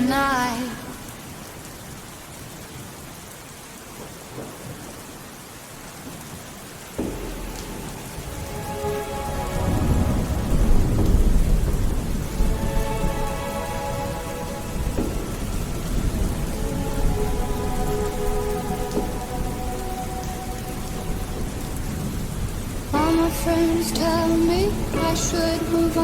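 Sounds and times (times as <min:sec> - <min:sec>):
steady rain: 0:00.0 - 0:26.0
thunder rumbling: 0:06.9 - 0:26.0.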